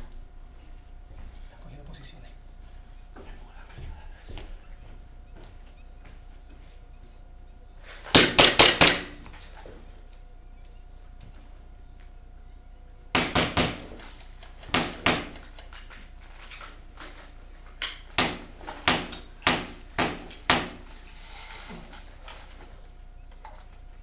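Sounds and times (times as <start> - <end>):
airsoft gun shots: 8.1 - 9.2, 13.2 - 13.9, 14.7 - 15.4, 18.2 - 20.8.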